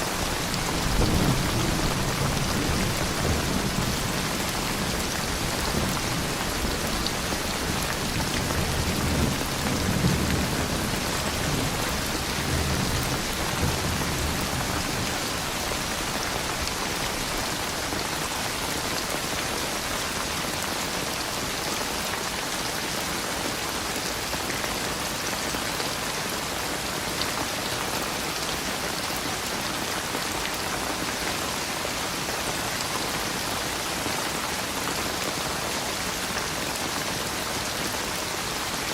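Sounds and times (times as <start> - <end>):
rain falling on a surface: 0.0 - 38.9
low thunder rumble: 0.1 - 16.6.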